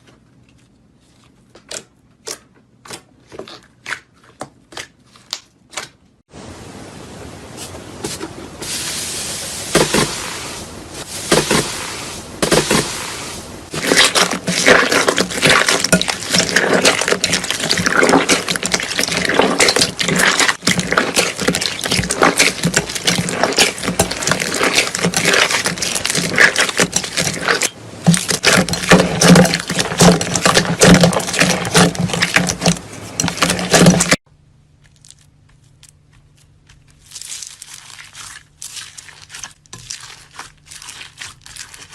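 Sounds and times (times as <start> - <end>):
slime squishing and popping: 13.7 - 34.2, 34.8 - 41.9.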